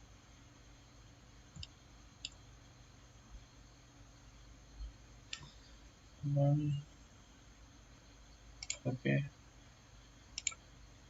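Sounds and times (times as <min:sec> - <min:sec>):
faint steady hum: 0:00.0 - 0:11.0
computer mouse clicks: 0:01.5 - 0:02.4, 0:08.6 - 0:08.8, 0:10.3 - 0:10.6.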